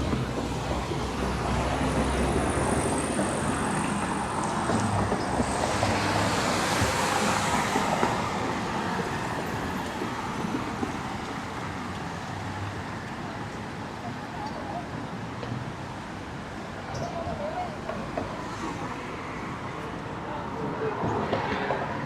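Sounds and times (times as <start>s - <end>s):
passing vehicle: 0.0s - 14.8s
steady street noise: 0.0s - 22.0s.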